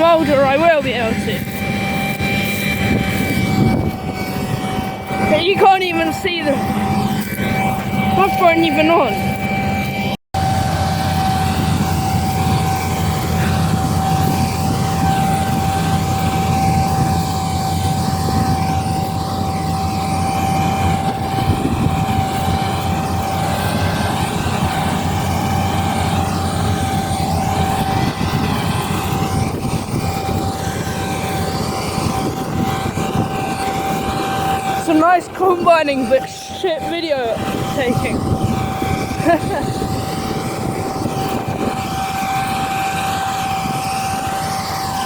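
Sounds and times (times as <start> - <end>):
combine harvester droning: 0.0 - 45.0
high whine: 0.0 - 45.0.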